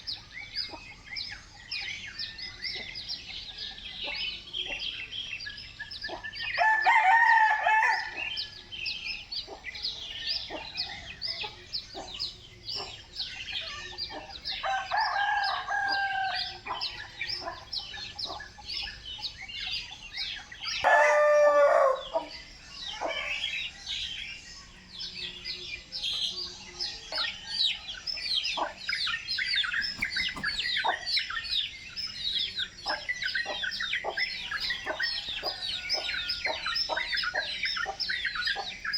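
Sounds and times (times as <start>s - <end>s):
rooster crowing: 6.6s - 8.4s, 14.6s - 16.9s, 20.8s - 22.4s, 34.6s - 36.7s.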